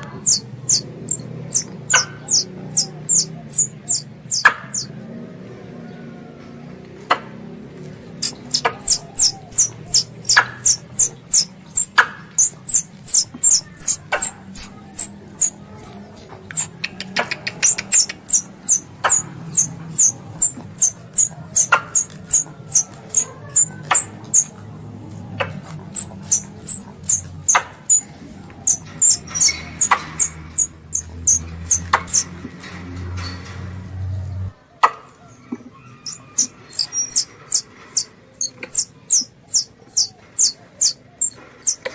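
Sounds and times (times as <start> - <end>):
high falling chirps: 0.0 - 4.9, 8.2 - 16.8, 17.4 - 24.6, 25.8 - 32.4, 35.9 - 41.9
sharp clicks: 8.2 - 33.7.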